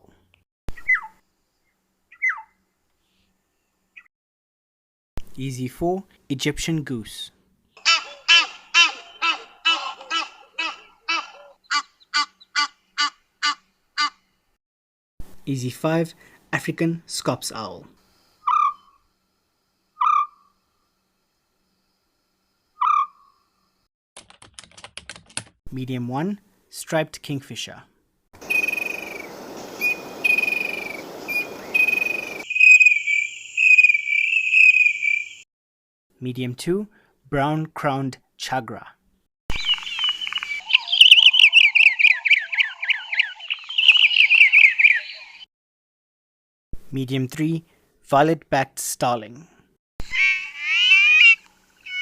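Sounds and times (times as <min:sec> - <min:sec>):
bird whistled song: 0:00.8 - 0:01.2, 0:02.1 - 0:02.6, 0:28.4 - 0:35.4, 0:39.5 - 0:45.5
owl purring trilled calls: 0:02.1 - 0:02.5, 0:07.8 - 0:12.7, 0:18.4 - 0:19.0, 0:20.0 - 0:20.5, 0:22.8 - 0:23.4, 0:28.4 - 0:35.4, 0:39.6 - 0:45.4, 0:50.1 - 0:52.0.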